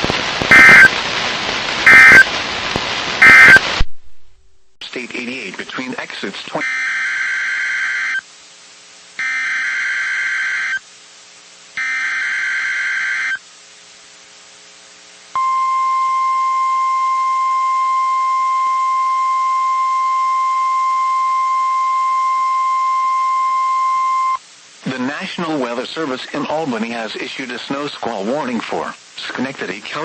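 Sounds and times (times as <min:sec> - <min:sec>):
steady warning alarm tone: 0:00.5 - 0:00.9, 0:01.9 - 0:02.3, 0:03.2 - 0:03.6, 0:06.6 - 0:08.2, 0:09.2 - 0:10.8, 0:11.8 - 0:13.4.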